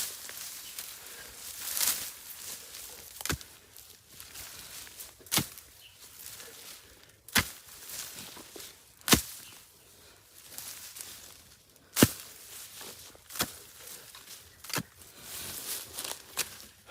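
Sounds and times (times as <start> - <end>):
earth scraping: 0.0 - 16.9
hoe chopping into soil: 5.3 - 5.6, 7.3 - 8.4, 9.0 - 9.6, 12.0 - 13.7, 14.6 - 15.0.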